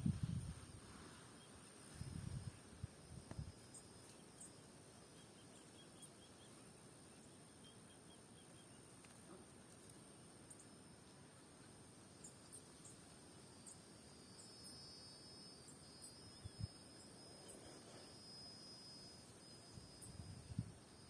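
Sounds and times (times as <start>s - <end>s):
faint high-pitched chirps: 0.0s - 11.1s, 12.1s - 21.0s
faint outdoor ambience: 0.0s - 21.0s.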